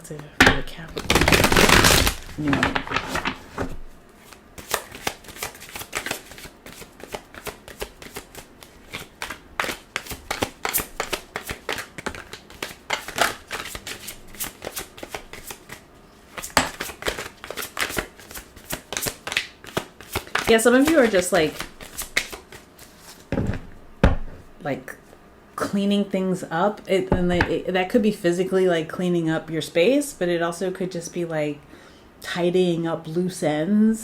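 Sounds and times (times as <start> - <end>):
cards being shuffled: 0.9 - 23.6.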